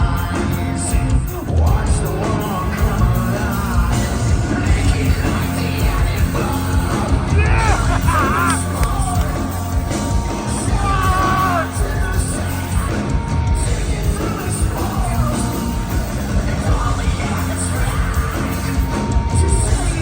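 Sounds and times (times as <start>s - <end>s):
loud live rock band: 0.0s - 20.0s
singer singing and yelling: 0.0s - 20.0s.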